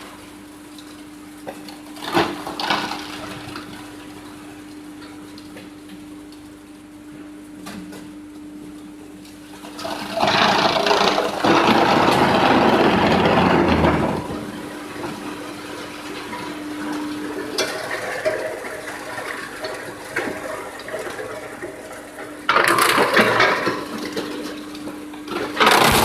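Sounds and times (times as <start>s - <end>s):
wood chipper humming: 0.0s - 26.0s
loud chipping noise: 10.2s - 14.5s, 25.6s - 26.0s.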